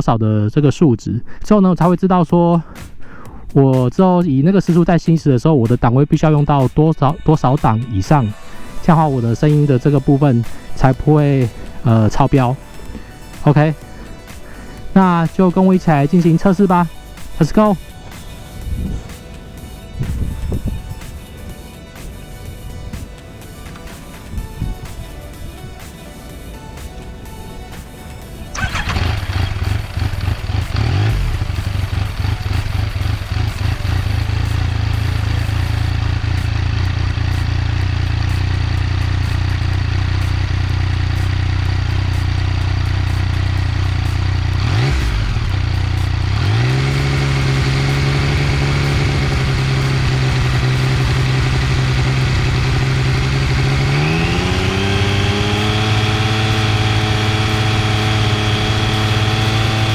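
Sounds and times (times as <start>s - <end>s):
motorcycle engine revving in steps: 28.5s - 59.9s.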